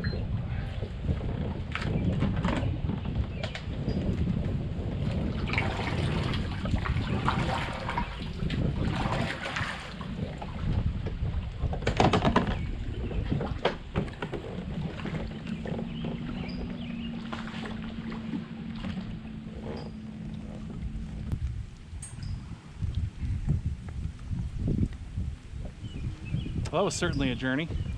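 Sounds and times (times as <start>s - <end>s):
water splashing around a kayak: 0.0s - 27.9s
wind rumbling on microphone: 0.0s - 27.9s
steady low hum: 14.7s - 27.9s.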